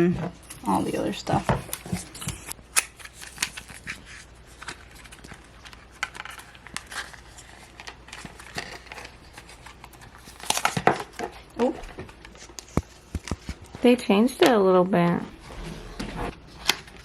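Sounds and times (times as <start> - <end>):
cardboard packaging rustling: 0.4 - 13.8, 15.3 - 17.0
paper crinkling: 0.4 - 13.8, 15.4 - 17.0.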